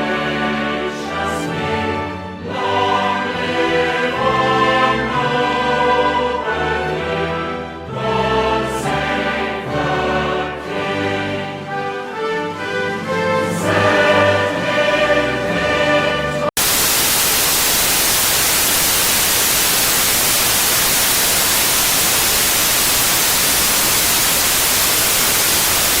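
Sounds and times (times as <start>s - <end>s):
television static hiss: 16.6s - 26.0s.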